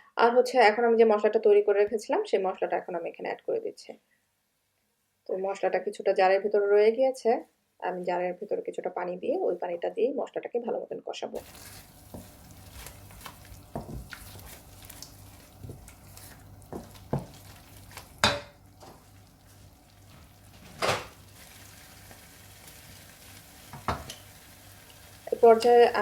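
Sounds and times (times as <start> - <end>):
spoon scraping cooking pot: 11.4 - 21.2
faint sizzle: 11.4 - 26.0.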